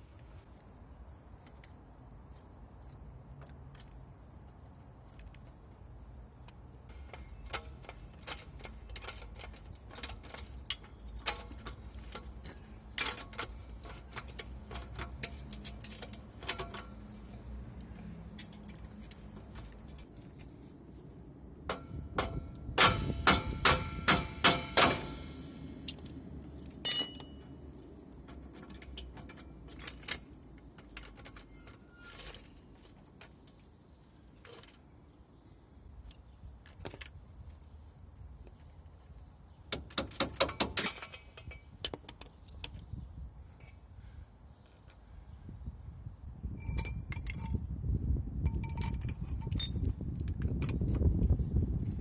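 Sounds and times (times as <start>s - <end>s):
hammer blows on metal: 21.7s - 25.4s
steel tools clinking: 26.8s - 27.5s, 28.7s - 33.1s, 39.9s - 42.2s, 46.6s - 47.6s, 48.5s - 50.9s.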